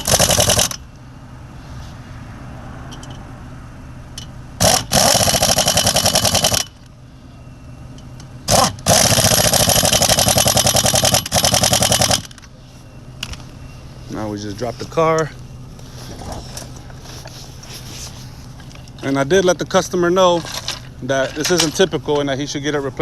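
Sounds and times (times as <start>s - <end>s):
impact wrench hammering: 4.2s - 6.8s, 8.5s - 12.4s.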